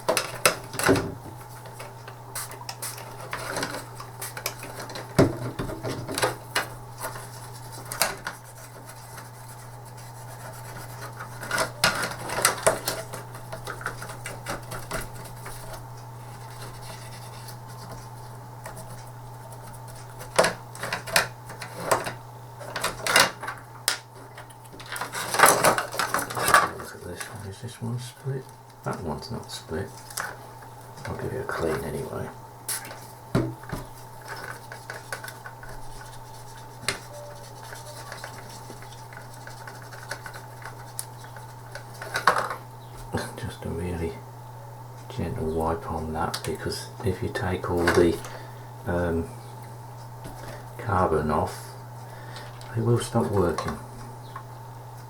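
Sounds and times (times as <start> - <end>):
steady low hum: 0.0 - 55.0
plastic parts clicking and knocking: 20.2 - 27.3, 41.7 - 42.6.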